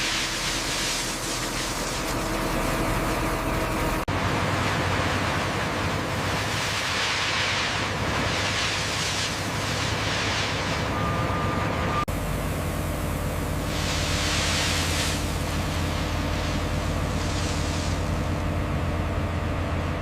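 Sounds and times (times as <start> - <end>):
diesel machinery hum: 0.0 - 20.0
loud rushing hiss: 6.2 - 11.0, 12.2 - 18.5.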